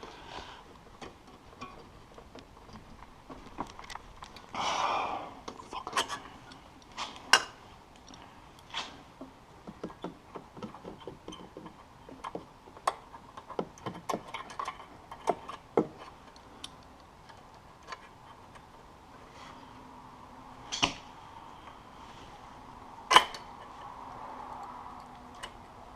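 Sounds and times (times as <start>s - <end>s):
scraping rustle: 5.6s - 9.2s.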